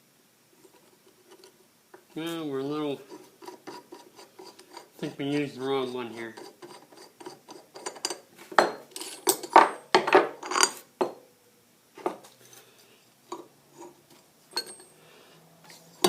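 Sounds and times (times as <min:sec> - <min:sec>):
steel pieces clinking and rattling: 0:08.9 - 0:10.8, 0:14.5 - 0:15.0.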